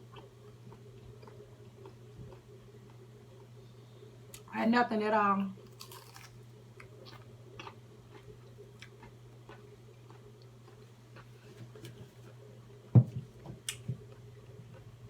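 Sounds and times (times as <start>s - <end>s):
steady low hum: 0.0s - 15.0s
chewing and mouth noises: 5.7s - 11.4s.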